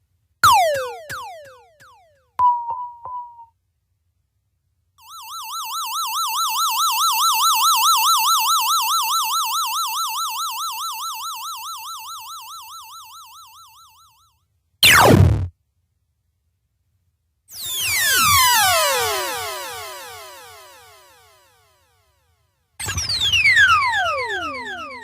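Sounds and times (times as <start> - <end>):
warbling electronic siren tone: 0.4 - 1.7, 14.8 - 15.5, 17.6 - 21.4, 22.8 - 25.0
electronic zap with clicks: 14.8 - 15.5.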